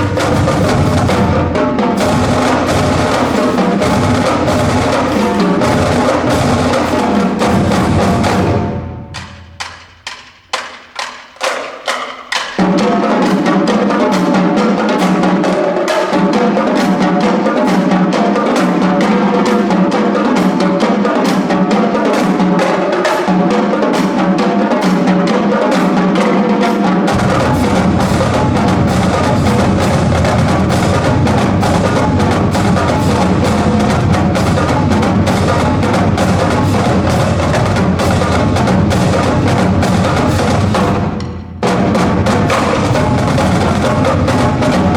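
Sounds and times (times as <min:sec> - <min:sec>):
snare and tenor drumming: 0:00.0 - 0:44.9
bass drum hits: 0:27.1 - 0:43.7.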